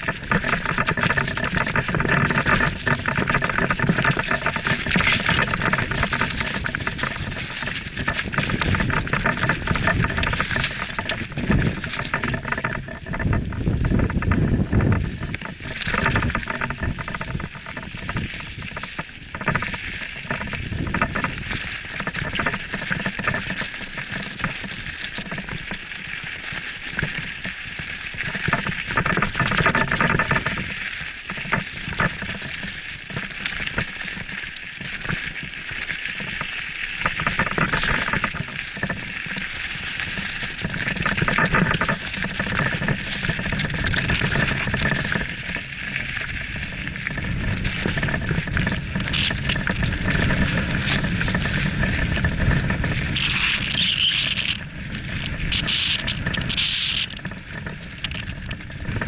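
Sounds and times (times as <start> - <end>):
bike tyres crunching over gravel: 32.7 - 59.0.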